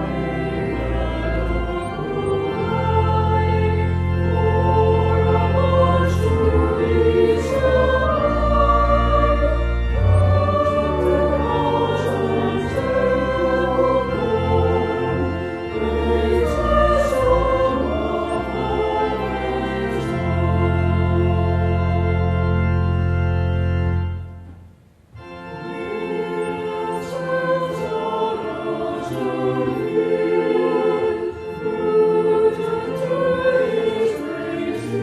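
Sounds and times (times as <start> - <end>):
choir singing: 0.0 - 23.6, 25.2 - 35.0
organ bass notes: 0.0 - 35.0.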